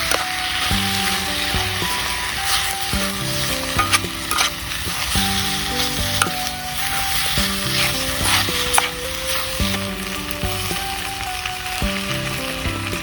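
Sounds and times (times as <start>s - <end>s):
sharp pops: 0.0s - 11.9s
background music held notes: 0.0s - 13.0s
food sizzling in frying pan: 0.0s - 13.0s.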